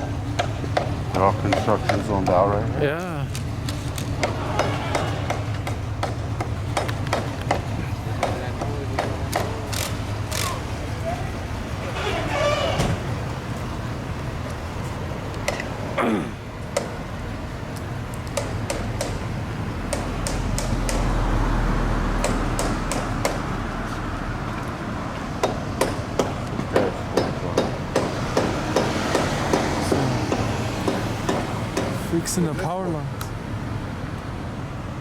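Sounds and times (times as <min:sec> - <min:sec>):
hammer blows: 0:04.2 - 0:09.6.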